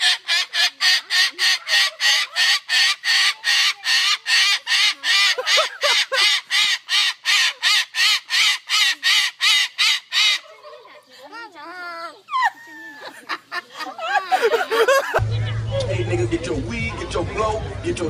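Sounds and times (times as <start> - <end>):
bird harsh call: 0.0 - 10.5.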